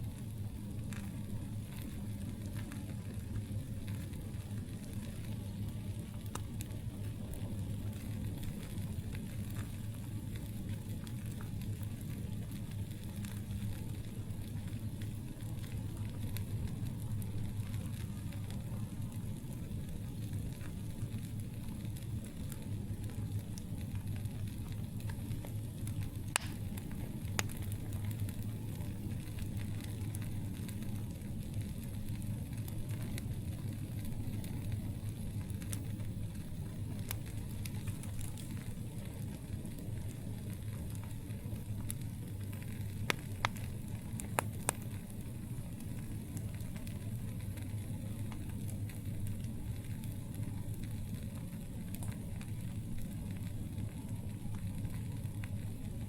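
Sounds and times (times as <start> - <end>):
campfire crackling: 0.0 - 56.0
sharp fire pops: 25.1 - 30.8, 41.2 - 45.0.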